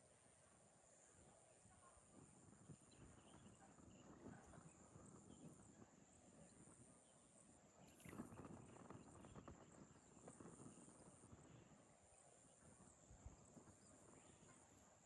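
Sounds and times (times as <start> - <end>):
thin high-pitched hum: 7.8 - 9.5.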